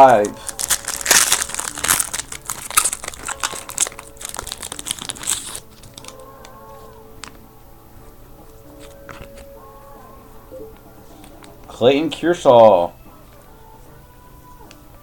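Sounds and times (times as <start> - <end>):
wrapper tearing and crinkling: 0.0 - 6.6.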